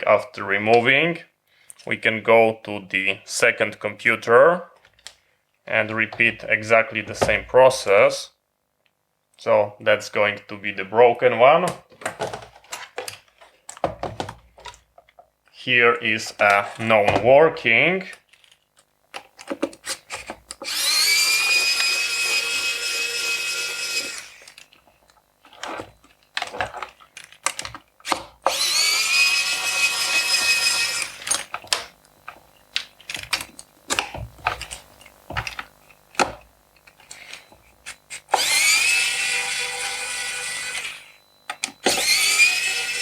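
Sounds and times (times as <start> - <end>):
electric screwdriver whining: 19.8 - 24.8, 27.4 - 43.0.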